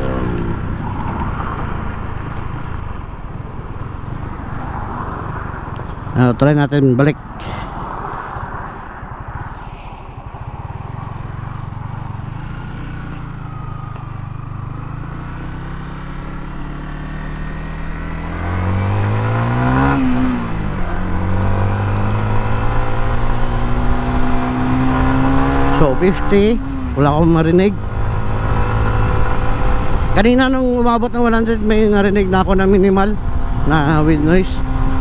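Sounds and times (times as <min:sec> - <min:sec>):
wind rush: 0:07.1 - 0:12.4
motorcycle engine running: 0:08.3 - 0:35.0.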